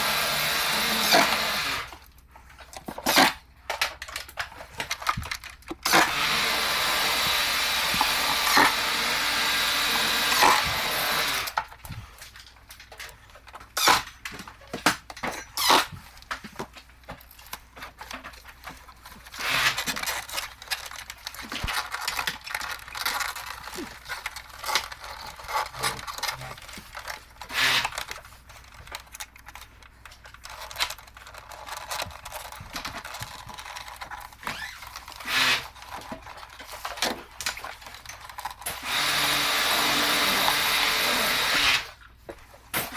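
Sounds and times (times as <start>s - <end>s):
clicks and knocks of parts handled: 1.9s - 6.0s, 10.6s - 39.3s.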